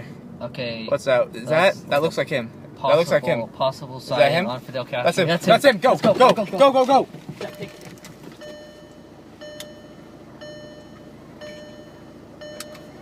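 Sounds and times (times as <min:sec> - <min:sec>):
low steady hum: 0:00.0 - 0:13.0
car warning chime dinging: 0:07.4 - 0:13.0.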